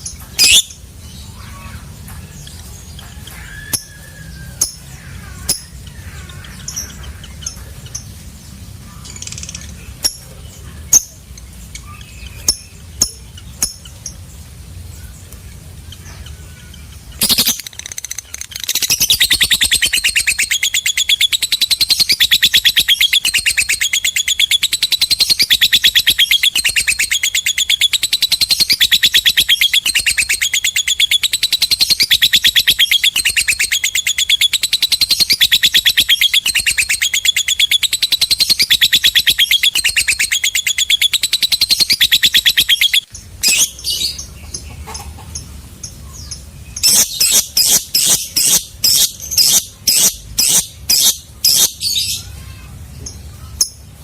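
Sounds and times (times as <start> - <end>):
lovebird chattering shrilly: 0.4 - 1.8, 16.6 - 44.3, 46.8 - 52.7.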